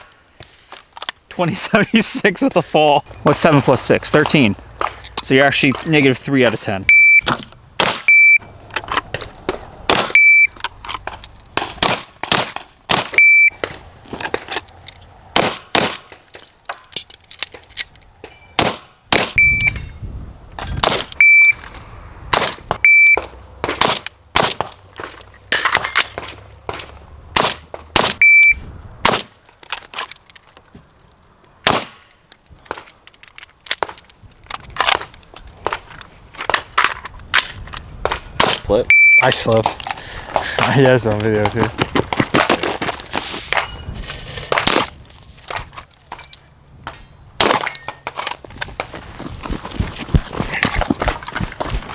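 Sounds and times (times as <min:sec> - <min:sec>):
gunshots: 0:07.8 - 0:08.1, 0:11.8 - 0:13.2, 0:27.4 - 0:28.2, 0:31.6 - 0:32.0
shot timer beep: 0:19.4 - 0:19.8, 0:22.9 - 0:23.2, 0:28.2 - 0:28.6, 0:38.9 - 0:39.3.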